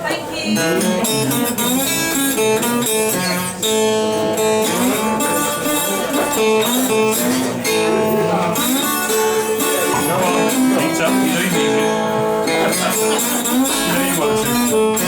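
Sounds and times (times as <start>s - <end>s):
acoustic guitar blues: 0.0s - 15.0s.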